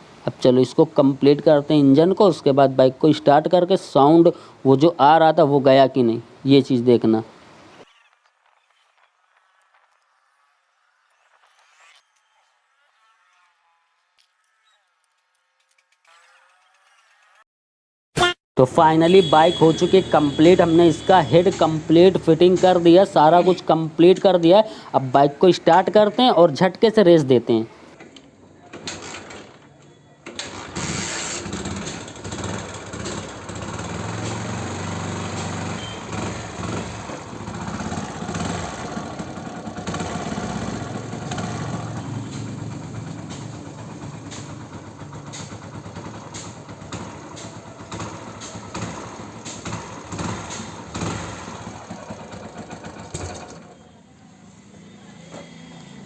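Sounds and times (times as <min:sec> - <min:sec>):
motorcycle engine revving: 0:30.4 - 0:56.0.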